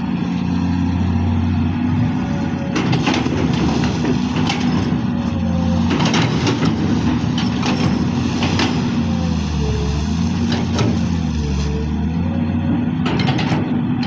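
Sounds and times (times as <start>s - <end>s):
excavator diesel engine drone: 0.0s - 14.0s
knocks and clatter: 13.0s - 14.0s.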